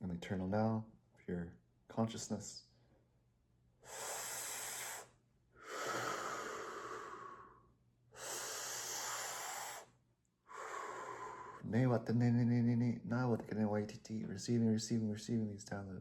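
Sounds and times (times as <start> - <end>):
man breathing deeply: 3.8 - 9.9, 10.5 - 11.7.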